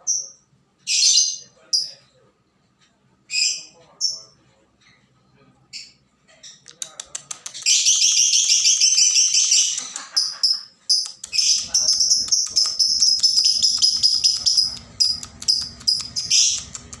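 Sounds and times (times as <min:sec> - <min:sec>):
lovebird shrill chatter: 0:07.6 - 0:16.9.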